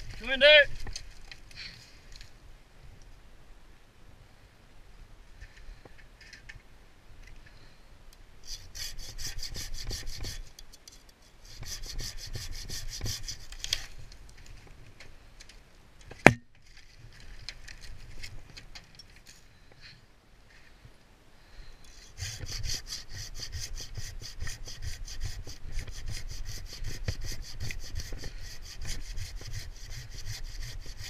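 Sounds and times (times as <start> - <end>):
hand saw cutting wood: 8.4 - 10.6, 11.4 - 13.9, 21.9 - 31.0.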